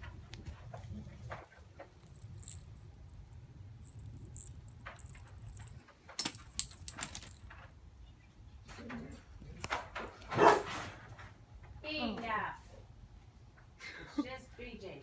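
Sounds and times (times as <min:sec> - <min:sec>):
collar bell jingling: 0:01.9 - 0:07.6.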